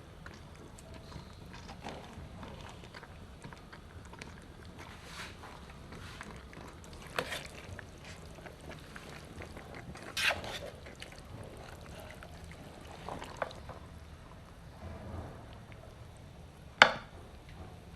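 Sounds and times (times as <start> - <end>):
liquid sloshing and pouring: 4.8 - 13.9.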